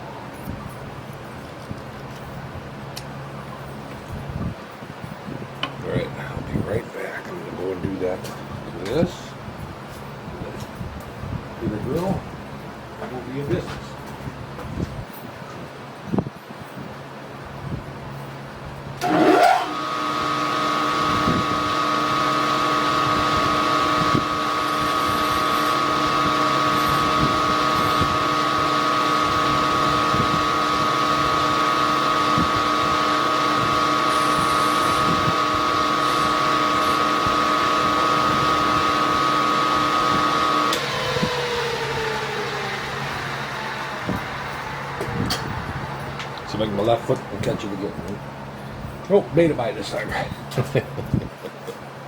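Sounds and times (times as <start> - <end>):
electric drill motor whining: 19.0 - 47.6.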